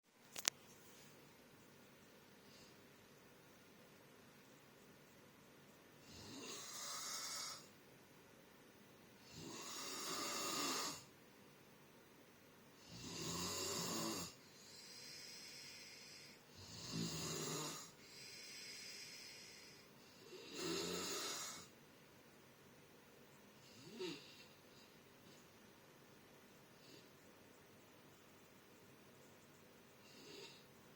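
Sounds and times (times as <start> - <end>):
person snoring: 6.0 - 7.7, 9.2 - 11.1, 12.8 - 21.7, 23.6 - 24.6, 30.0 - 30.7.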